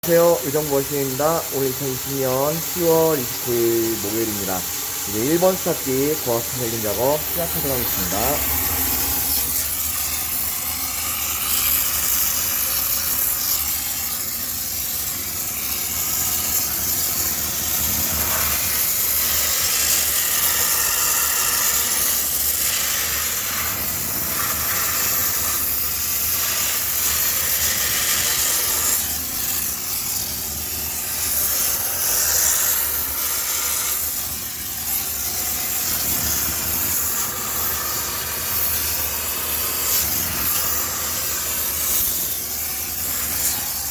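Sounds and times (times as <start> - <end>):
steam hissing: 0.0 - 43.9
low machine hum: 2.6 - 10.1.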